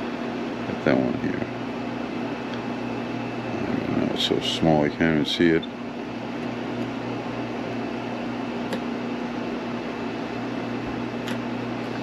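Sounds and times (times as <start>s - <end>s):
fan hum and hiss: 0.0s - 12.0s.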